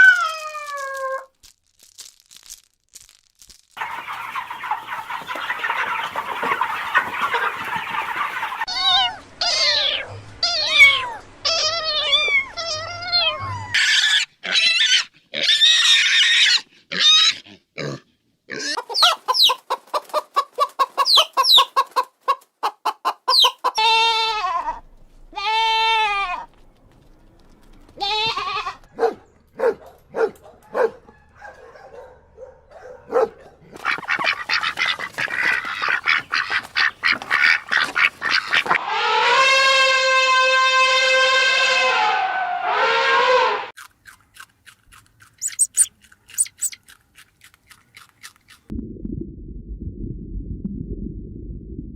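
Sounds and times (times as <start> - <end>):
long held animal call: 38.8 - 43.7.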